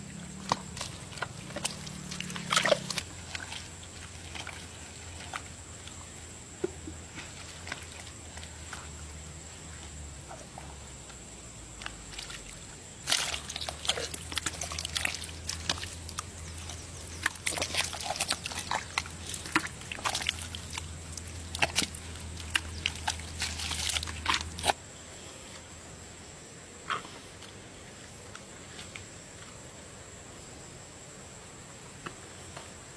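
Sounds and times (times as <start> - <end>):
sloshing and squelching in mud: 0.0 - 11.1, 11.7 - 24.8.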